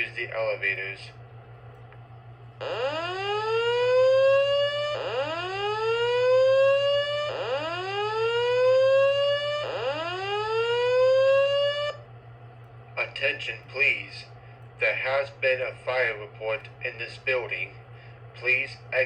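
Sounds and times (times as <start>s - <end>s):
voice evacuation message: 0.0s - 1.2s, 13.0s - 19.0s
fire alarm whoop tone: 2.6s - 12.0s.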